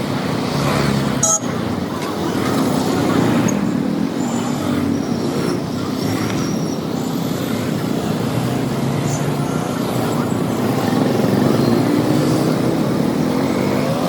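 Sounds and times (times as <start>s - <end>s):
road noise: 0.0s - 14.0s.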